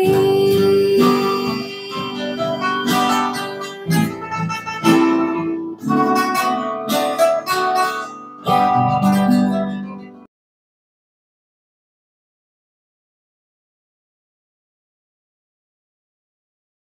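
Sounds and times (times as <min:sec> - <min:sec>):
acoustic guitars strumming chords: 0:00.0 - 0:10.3.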